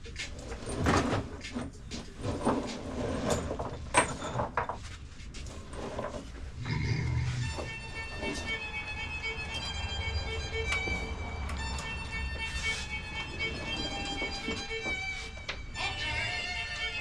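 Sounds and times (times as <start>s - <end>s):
music with strings: 7.4s - 17.0s.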